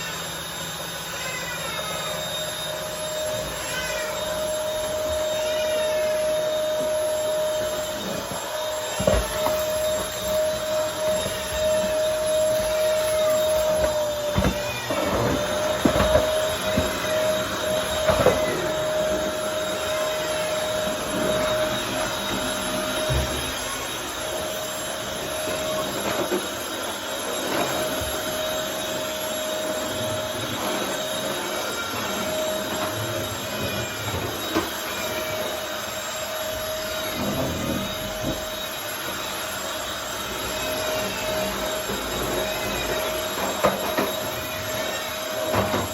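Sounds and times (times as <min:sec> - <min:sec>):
vacuum cleaner motor whine: 0:00.0 - 0:45.9
vacuum cleaner knocks and scrapes: 0:07.0 - 0:19.8, 0:37.0 - 0:38.7, 0:42.1 - 0:44.7, 0:45.4 - 0:45.9.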